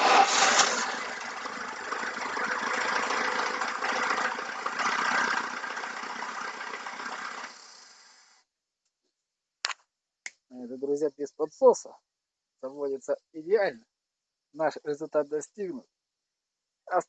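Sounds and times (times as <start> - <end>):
car engine starting and running: 0.0 - 8.4.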